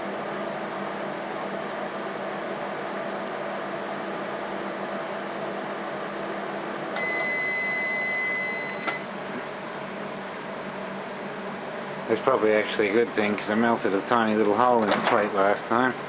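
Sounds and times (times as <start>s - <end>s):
microwave oven humming: 0.0s - 16.0s
microwave click: 6.9s - 9.1s
high electronic beep: 7.0s - 9.0s.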